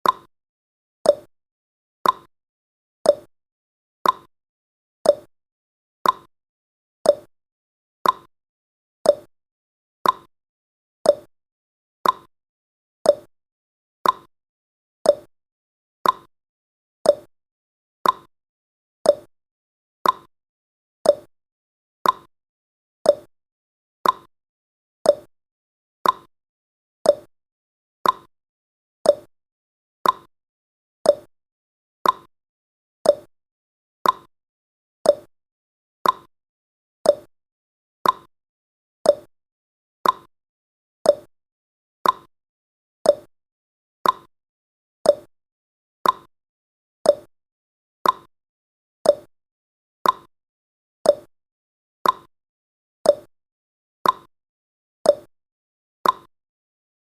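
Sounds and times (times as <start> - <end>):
countdown timer ticking: 31.1 - 31.3, 33.1 - 33.3, 35.1 - 35.3, 39.1 - 39.3, 41.1 - 41.3, 43.1 - 43.3, 47.1 - 47.3.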